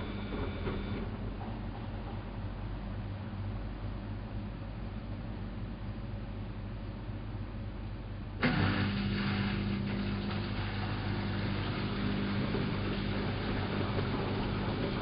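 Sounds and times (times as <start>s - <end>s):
washing machine pump humming: 0.0s - 15.0s
hiss: 8.4s - 13.3s.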